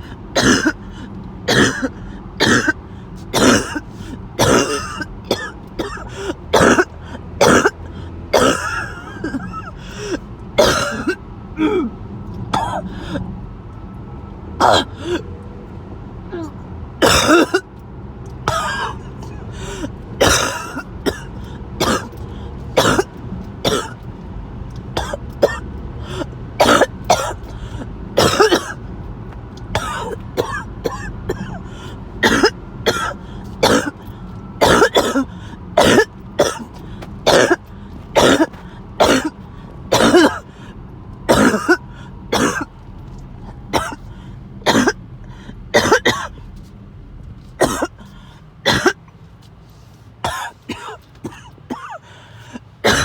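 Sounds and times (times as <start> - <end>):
person coughing harshly: 0.3 - 13.2, 14.6 - 15.3, 16.4 - 17.7, 18.5 - 22.2, 22.8 - 24.0, 25.0 - 28.8, 29.8 - 40.6, 41.3 - 42.7, 43.7 - 45.0, 45.7 - 46.4, 47.6 - 49.0, 50.2 - 53.0.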